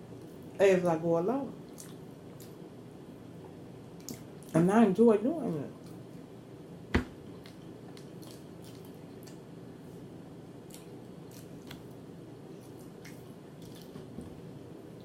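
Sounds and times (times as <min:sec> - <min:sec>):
low steady hum: 0:00.0 - 0:15.0
wet chewing clicks: 0:01.7 - 0:02.6, 0:04.0 - 0:04.5, 0:07.4 - 0:09.4, 0:10.6 - 0:11.9, 0:12.8 - 0:14.0
sharp knock: 0:07.0 - 0:07.2.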